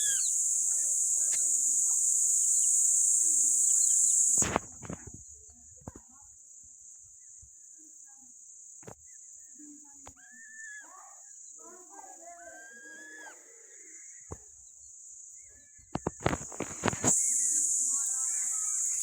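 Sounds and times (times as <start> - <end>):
faint short chirps: 0.0 - 2.0, 15.9 - 19.0
insects droning: 0.0 - 19.0.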